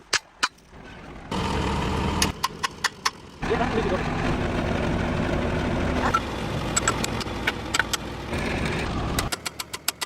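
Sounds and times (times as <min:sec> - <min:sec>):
engine low rumble: 0:00.6 - 0:10.0
sharp metallic clicks: 0:02.2 - 0:03.3, 0:06.7 - 0:08.1, 0:09.1 - 0:10.0.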